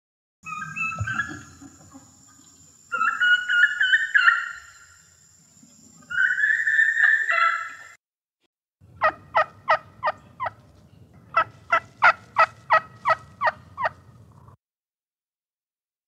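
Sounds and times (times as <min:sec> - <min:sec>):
wild turkey yelping: 0:00.5 - 0:02.0, 0:02.9 - 0:04.9, 0:06.1 - 0:08.0.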